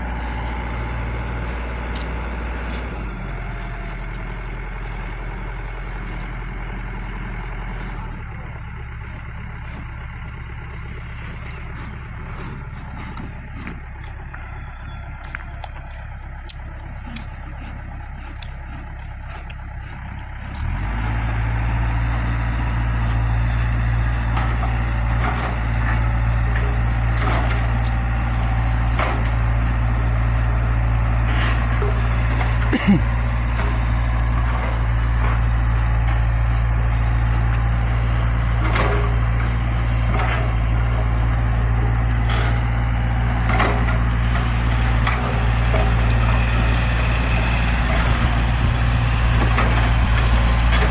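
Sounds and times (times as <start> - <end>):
excavator diesel engine running: 0.0 - 50.9
knocks and cracks of digging: 24.1 - 50.9.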